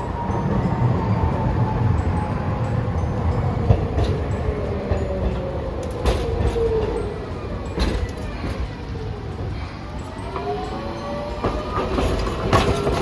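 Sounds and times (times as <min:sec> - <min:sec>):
streetcar rumbling: 0:00.0 - 0:13.0
streetcar whine: 0:00.0 - 0:13.0
wheels clacking over rail joints: 0:00.0 - 0:13.0.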